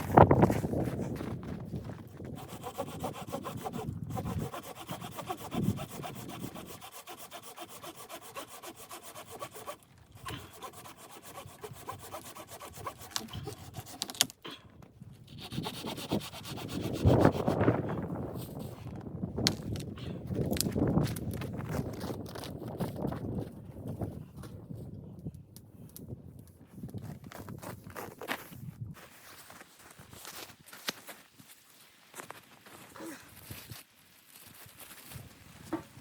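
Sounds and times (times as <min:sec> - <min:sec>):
hand saw cutting wood: 0:02.2 - 0:14.3, 0:15.3 - 0:17.7.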